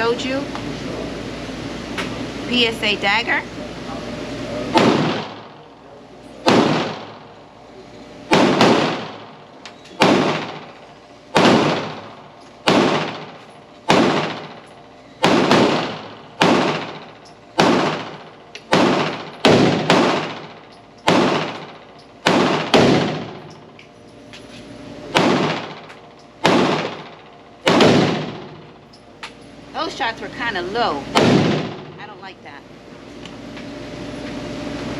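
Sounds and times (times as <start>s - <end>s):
pistol shots echoing: 4.8s - 5.5s, 6.4s - 7.3s, 8.3s - 9.4s, 10.0s - 14.6s, 15.2s - 23.6s, 25.1s - 28.7s, 31.1s - 32.0s.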